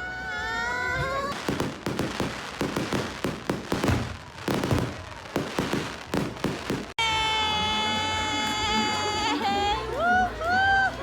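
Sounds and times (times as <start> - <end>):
fireworks bangs and crackles: 0.5 - 7.4.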